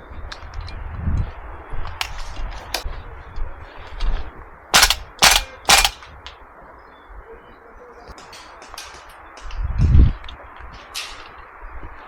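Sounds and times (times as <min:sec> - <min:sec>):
airsoft rifle shots: 0:04.7 - 0:06.1.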